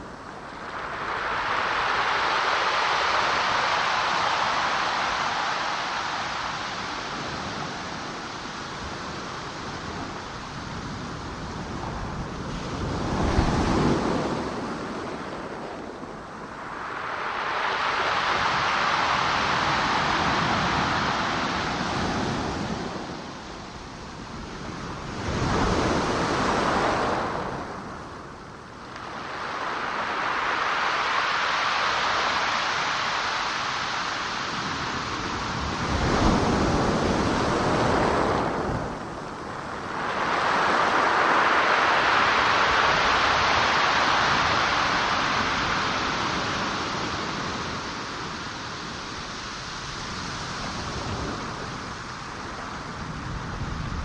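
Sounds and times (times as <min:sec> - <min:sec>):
ocean waves breaking: 0:00.0 - 0:54.0.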